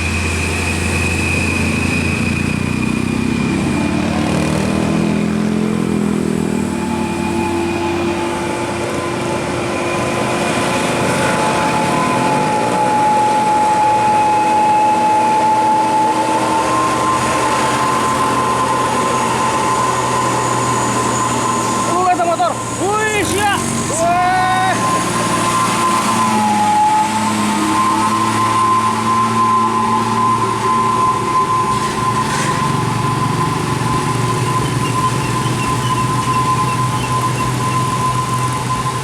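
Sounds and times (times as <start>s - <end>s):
bus engine and road rumble: 0.0s - 39.0s
long high whine: 0.0s - 39.0s.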